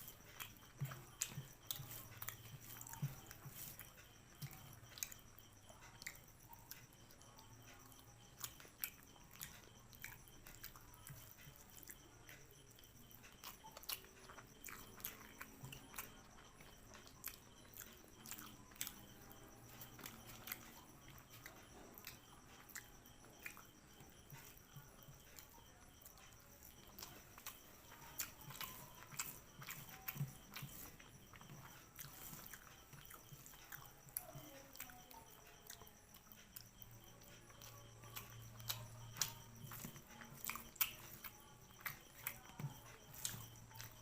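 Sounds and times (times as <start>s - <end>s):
person chewing and biting: 0.0s - 5.4s, 26.6s - 34.1s, 37.6s - 44.0s.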